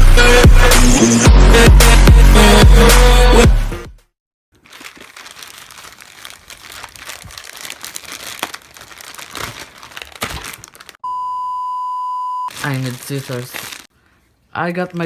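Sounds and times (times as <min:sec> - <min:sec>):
packaging crinkling and rustling: 0:04.6 - 0:11.0, 0:12.5 - 0:13.9.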